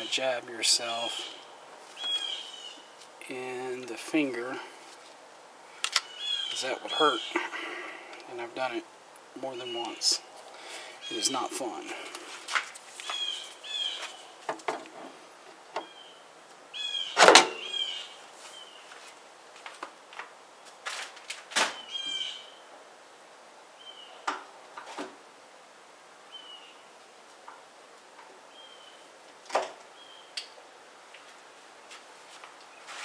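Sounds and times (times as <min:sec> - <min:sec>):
small birds chirping: 0:00.0 - 0:04.6, 0:05.7 - 0:19.0, 0:21.8 - 0:22.7, 0:23.8 - 0:24.3, 0:26.3 - 0:27.0, 0:28.4 - 0:29.2, 0:29.9 - 0:30.6.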